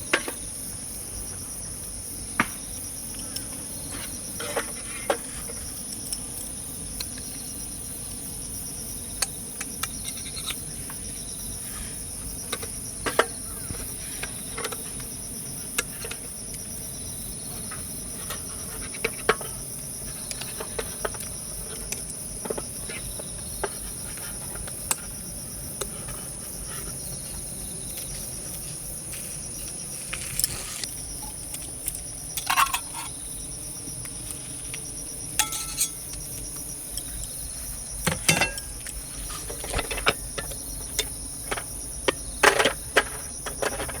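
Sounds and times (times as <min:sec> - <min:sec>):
insects chirping: 0:00.0 - 0:44.0.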